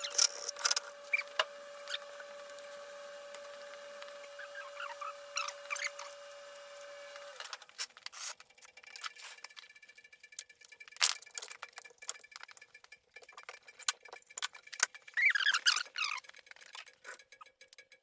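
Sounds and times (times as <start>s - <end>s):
metal tools clinking: 0.0s - 1.0s.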